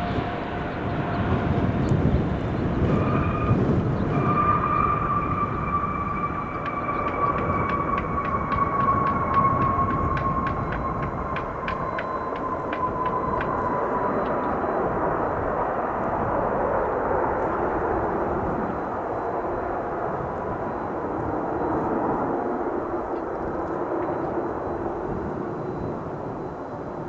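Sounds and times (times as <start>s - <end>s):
high jet whine: 0.0s - 15.8s
jet engines rushing: 0.0s - 23.9s.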